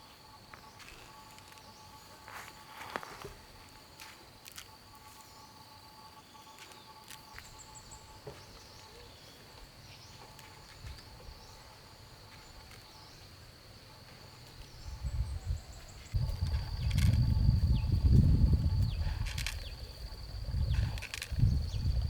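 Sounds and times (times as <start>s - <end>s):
high insect drone: 0.0s - 22.0s
bird chirps: 5.1s - 13.3s.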